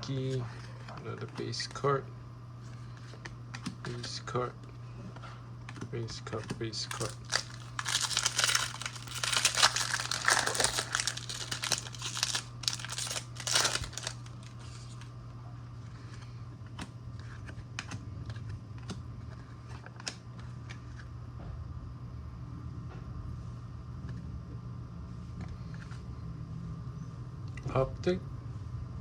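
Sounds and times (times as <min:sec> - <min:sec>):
cards clicking: 0:06.9 - 0:14.5
foil wrapper crinkling and tearing: 0:06.9 - 0:15.0.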